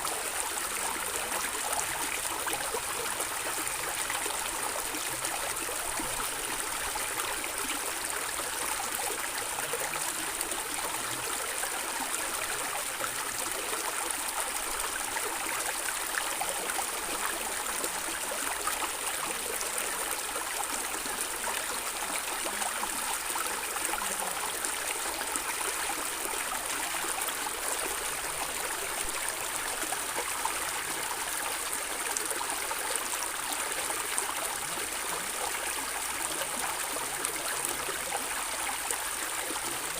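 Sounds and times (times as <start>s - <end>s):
stream water flowing over stones: 0.0s - 39.9s.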